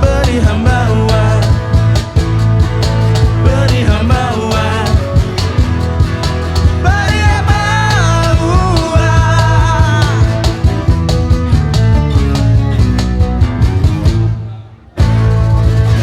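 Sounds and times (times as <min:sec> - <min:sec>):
steady drum beat: 0:00.0 - 0:14.4, 0:15.0 - 0:16.0
bass: 0:00.0 - 0:16.0
rock guitars: 0:00.0 - 0:16.0
lead guitar melody: 0:14.9 - 0:16.0.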